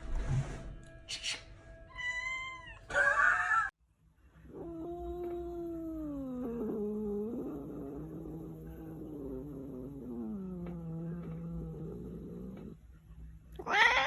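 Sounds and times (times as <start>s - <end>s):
cat meowing: 13.6s - 14.0s
cat screeching: 13.6s - 14.0s
cat yowling: 13.6s - 14.0s.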